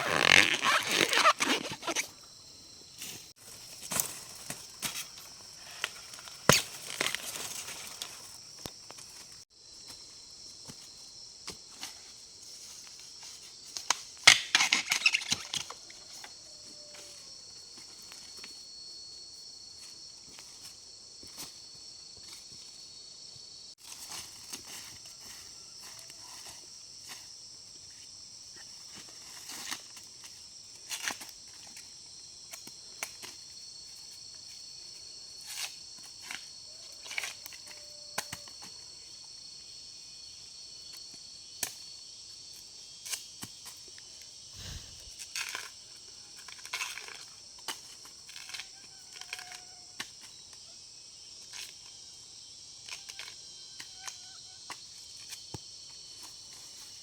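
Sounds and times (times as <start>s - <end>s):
high-pitched insect chorus: 0.0s - 57.0s
cracks and rustles: 3.0s - 9.4s, 46.4s - 50.2s.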